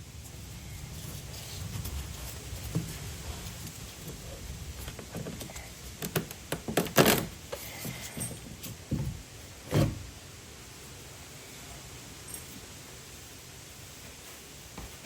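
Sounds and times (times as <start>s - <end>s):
dull thud: 8.9s - 10.1s.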